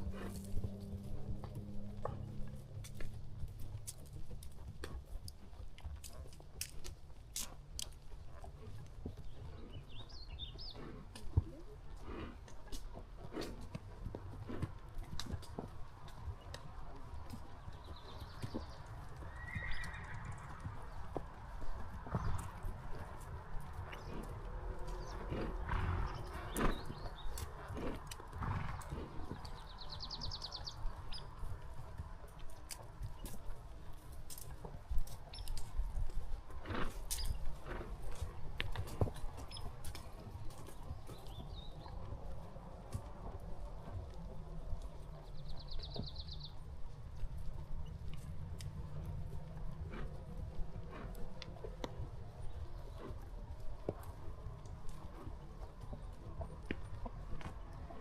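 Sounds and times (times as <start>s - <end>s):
horse breathing: 0.0s - 3.2s, 9.2s - 15.6s, 21.9s - 30.7s, 48.6s - 54.0s
low steady rumble: 0.0s - 4.6s
horse hooves crunching on trail: 0.0s - 58.0s.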